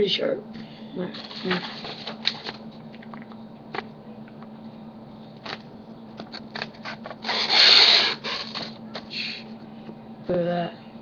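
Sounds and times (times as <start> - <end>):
blade cutting paper swish: 6.8 - 8.7.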